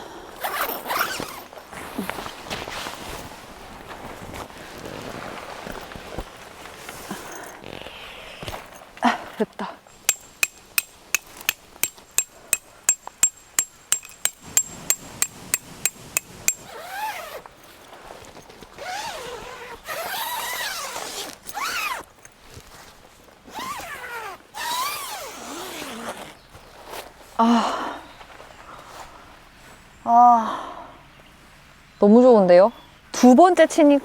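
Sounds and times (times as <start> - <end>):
hammer striking metal tent stakes: 9.9 - 16.8.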